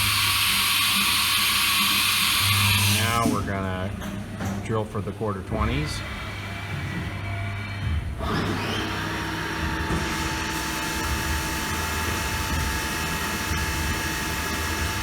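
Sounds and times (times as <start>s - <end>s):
machine hiss: 0.0s - 3.3s.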